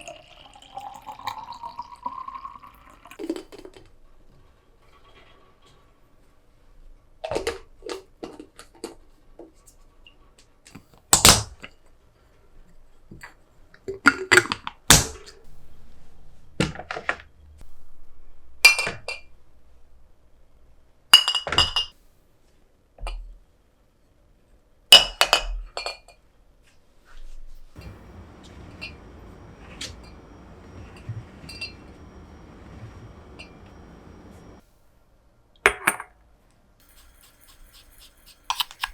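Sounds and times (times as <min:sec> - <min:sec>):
glass jars clinking: 0:36.8 - 0:38.9.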